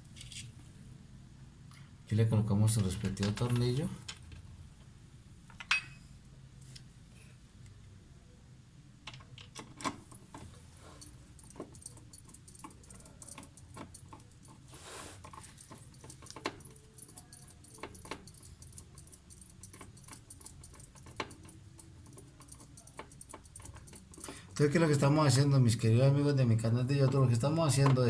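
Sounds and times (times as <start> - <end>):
screwdriver clicks and metallic taps: 15.3 - 24.6.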